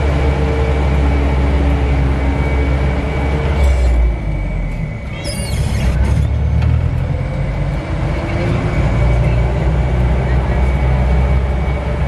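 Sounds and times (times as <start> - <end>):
diesel engine running: 0.0 - 12.0
brief high squeal: 3.6 - 6.4.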